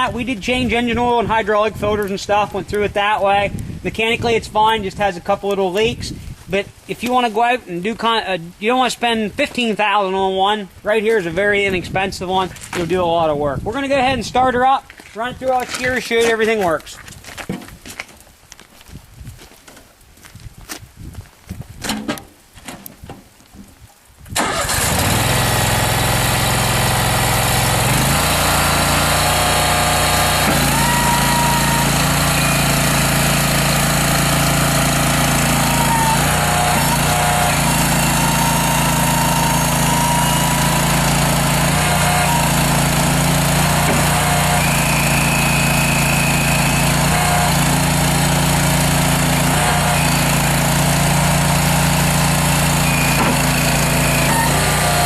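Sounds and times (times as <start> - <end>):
short high whines: 24.4 - 47.9, 51.2 - 55.0
gas engine running: 24.4 - 55.0.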